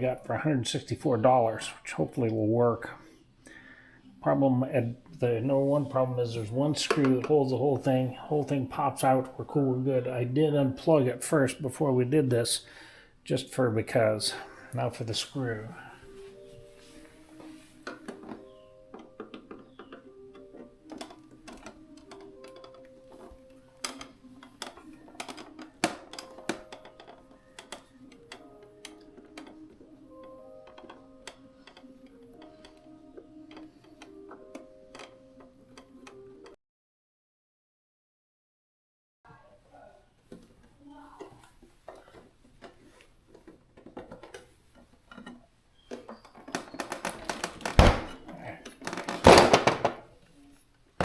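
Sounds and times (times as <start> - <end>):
quiet background music: 0.0 - 36.6, 39.3 - 51.0
plastic parts handled: 17.3 - 36.5, 40.2 - 50.4.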